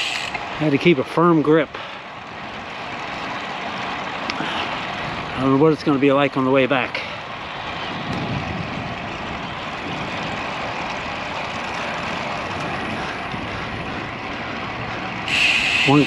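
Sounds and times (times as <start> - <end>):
strong wind on microphone: 7.6 - 11.2.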